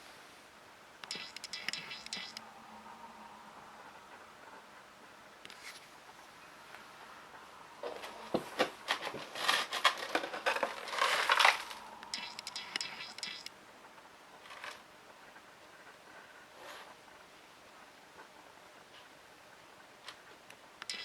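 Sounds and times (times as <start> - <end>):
crinkling and clicking handling noise: 7.8 - 13.2, 14.4 - 14.9, 20.0 - 21.0
fine crackly rasp: 7.9 - 13.5.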